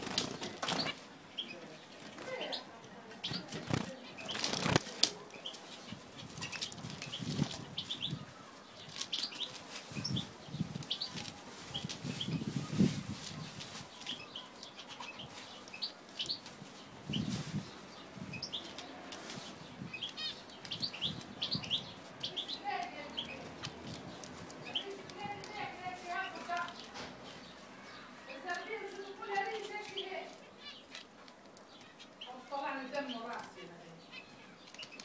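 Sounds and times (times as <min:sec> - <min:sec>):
wings flapping: 0:00.0 - 0:01.0, 0:03.3 - 0:05.2
finches chirping: 0:00.0 - 0:35.0.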